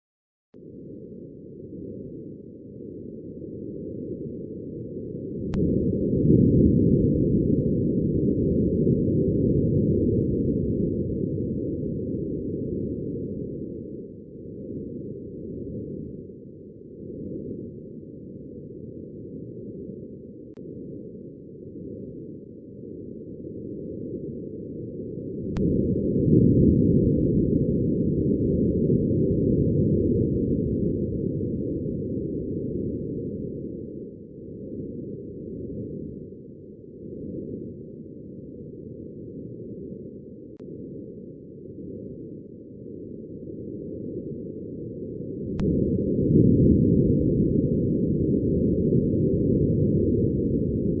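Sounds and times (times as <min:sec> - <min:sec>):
muffled wind rush: 0:00.7 - 0:51.0
faint click: 0:05.5 - 0:05.7, 0:45.5 - 0:45.7.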